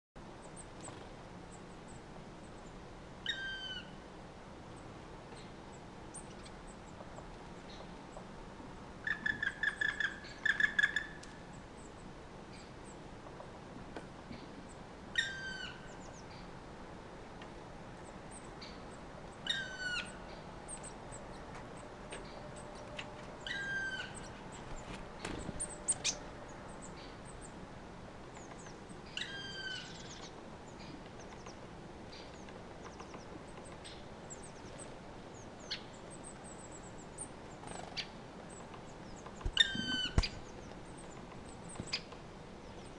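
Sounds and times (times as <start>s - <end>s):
bird calling: 22.1s - 27.4s, 37.6s - 40.8s.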